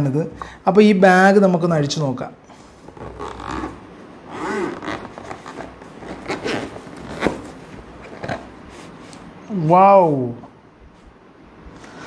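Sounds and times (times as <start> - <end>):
bag rustling: 2.7 - 9.2
zipper unzipping: 2.9 - 8.5.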